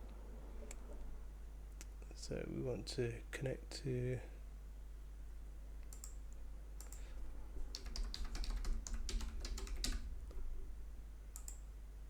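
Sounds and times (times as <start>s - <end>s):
keyboard typing: 5.9s - 6.2s, 7.6s - 10.4s, 11.3s - 11.6s.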